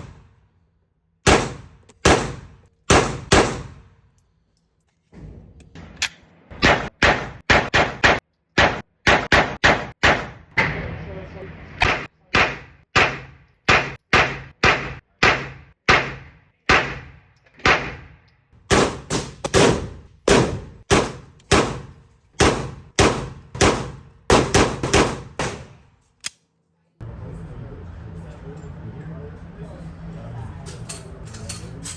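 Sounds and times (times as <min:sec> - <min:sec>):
airsoft pistol shots: 0:01.2 - 0:03.9, 0:06.6 - 0:10.4, 0:11.8 - 0:18.1, 0:18.7 - 0:25.8.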